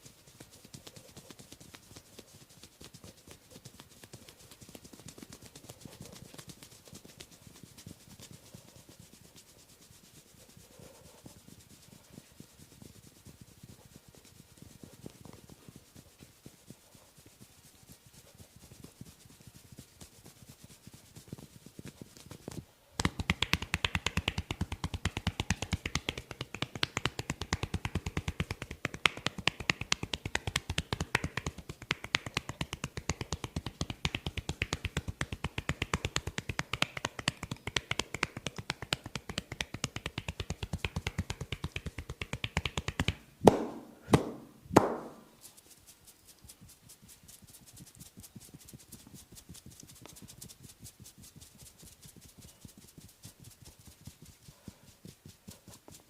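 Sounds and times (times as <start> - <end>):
hand taps on head: 23.0 - 45.3
loud slaps: 23.0 - 45.3.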